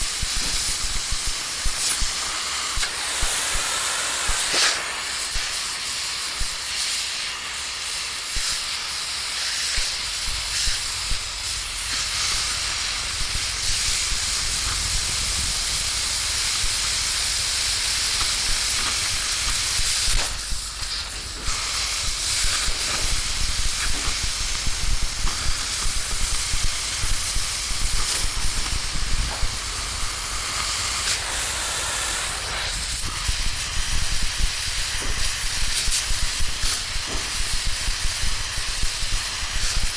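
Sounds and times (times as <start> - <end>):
steady hissing noise: 0.0 - 39.9.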